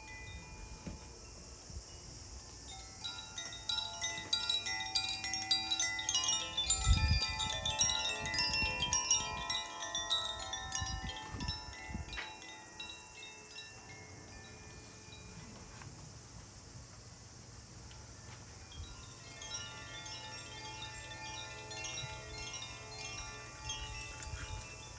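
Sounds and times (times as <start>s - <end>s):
chimes ringing in a cascade: 2.7s - 15.4s, 18.7s - 24.9s.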